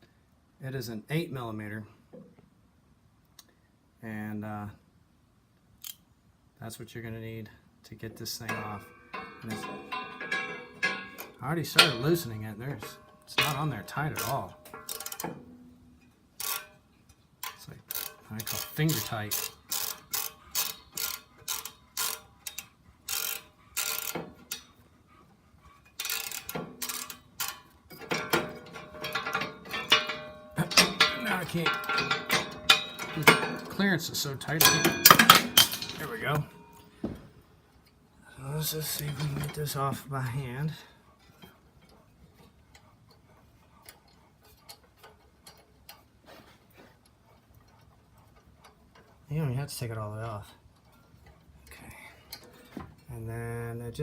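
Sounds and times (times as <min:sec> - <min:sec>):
ratchet wrench clicking: 0:05.8 - 0:06.0, 0:13.3 - 0:15.8, 0:16.4 - 0:16.8, 0:17.4 - 0:24.7, 0:25.9 - 0:33.7
small nut clicking: 0:05.8 - 0:06.0.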